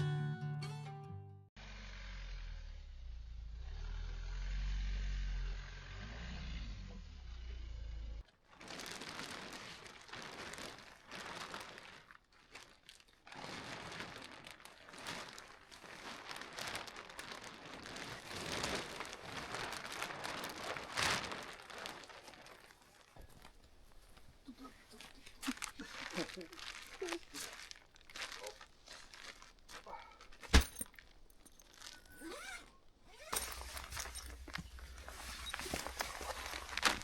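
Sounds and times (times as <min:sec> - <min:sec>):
crinkling crunching rustle: 0:08.3 - 0:37.0.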